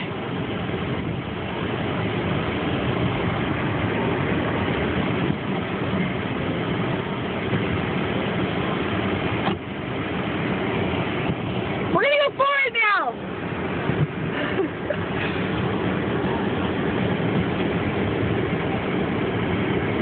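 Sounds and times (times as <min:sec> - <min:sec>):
car engine revving: 0:00.0 - 0:12.3.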